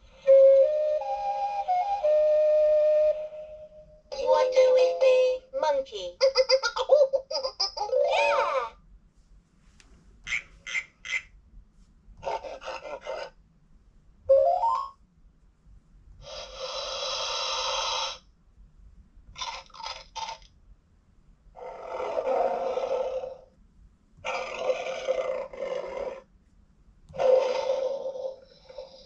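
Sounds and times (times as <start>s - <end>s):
toy playing animal sounds: 4.1s - 5.5s.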